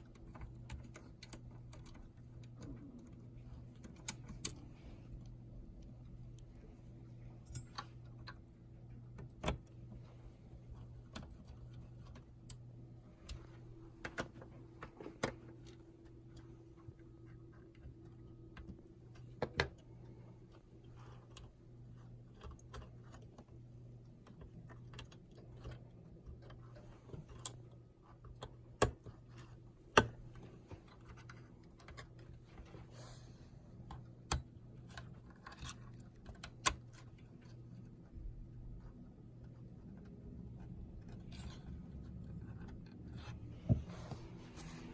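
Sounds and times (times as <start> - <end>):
steady low hum: 0.0 - 44.9
small hardware clicking and tapping: 7.3 - 8.5.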